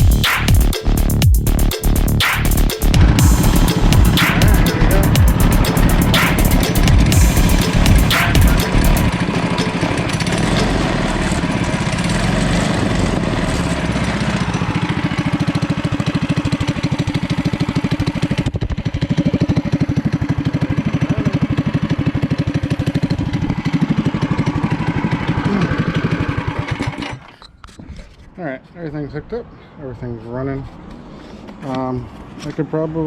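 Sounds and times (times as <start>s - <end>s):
small engine running: 2.0s - 27.4s.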